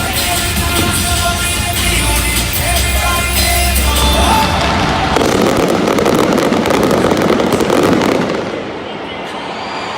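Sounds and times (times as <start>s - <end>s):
rock music with singing: 0.0s - 5.2s.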